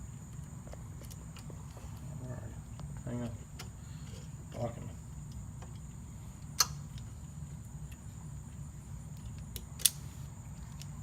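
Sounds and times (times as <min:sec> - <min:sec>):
steady low hum: 0:00.0 - 0:11.0
hand tool clicks: 0:09.4 - 0:10.0.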